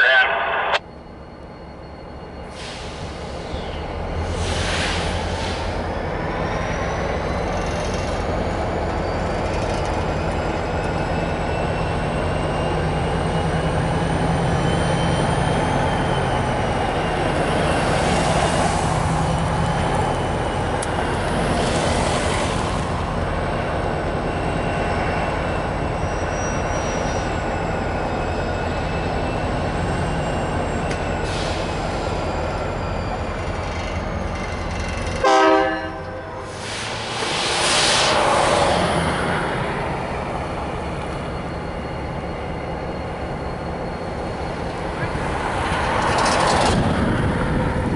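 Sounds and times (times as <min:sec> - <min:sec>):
diesel locomotive engine running: 0:00.0 - 0:47.9
high-pitched wheel squeal: 0:24.2 - 0:35.9.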